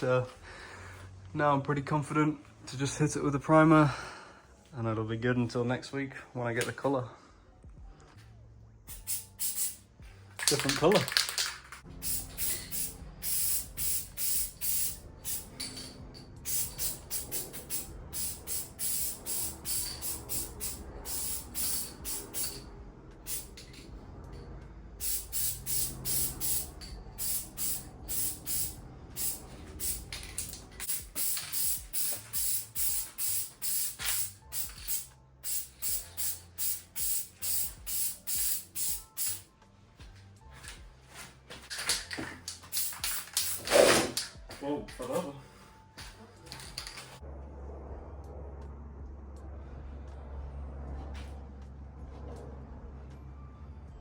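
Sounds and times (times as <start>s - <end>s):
aerosol spray hissing: 8.9s - 9.8s, 12.0s - 15.6s, 16.4s - 22.6s, 23.3s - 23.6s, 25.0s - 39.4s, 42.7s - 43.6s.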